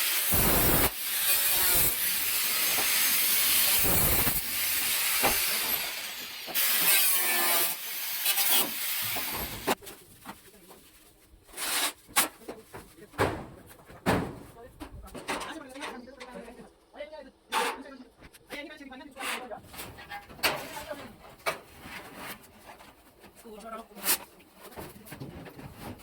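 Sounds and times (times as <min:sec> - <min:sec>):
harsh hissing rasp: 0:00.0 - 0:09.7.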